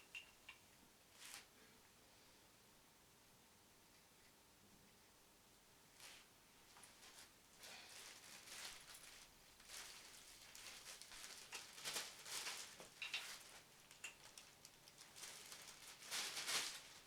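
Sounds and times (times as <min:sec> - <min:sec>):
packaging rustling: 0:06.8 - 0:17.0.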